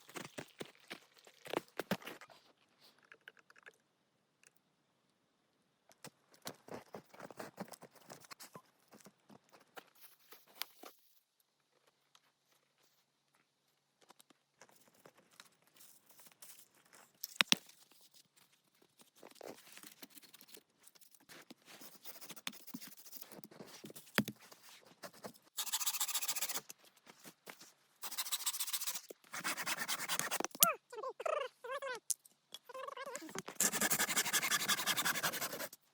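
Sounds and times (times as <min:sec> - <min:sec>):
rasping strokes: 0:25.6 - 0:26.6, 0:28.0 - 0:30.6, 0:33.4 - 0:35.8.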